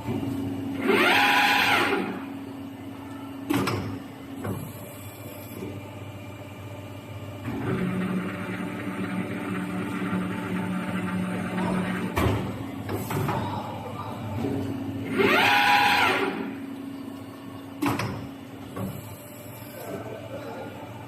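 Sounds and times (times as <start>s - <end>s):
machine humming: 0.0s - 21.0s
motor whine: 14.8s - 17.2s.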